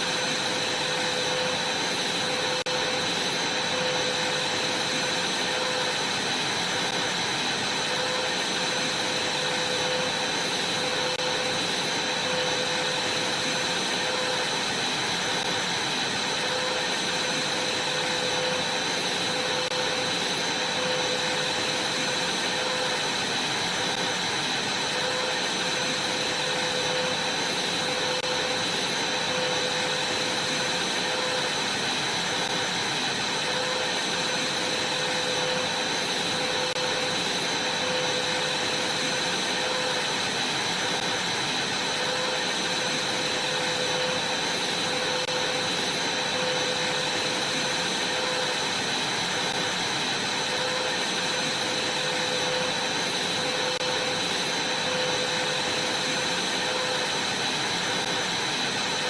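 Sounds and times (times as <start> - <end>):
vacuum cleaner running: 0.0 - 59.0.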